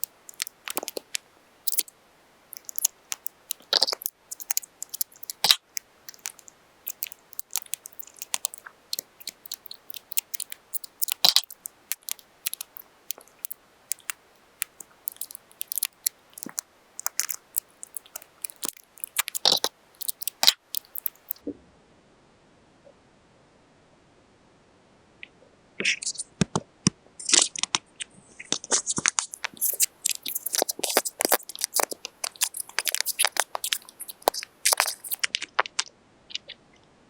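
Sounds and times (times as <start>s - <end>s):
paper crinkling: 0.0s - 1.9s, 2.6s - 21.4s.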